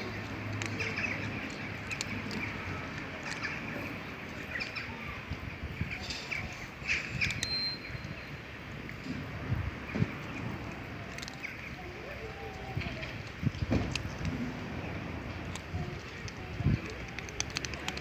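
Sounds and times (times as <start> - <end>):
high chirps and clicks: 6.0 - 8.4.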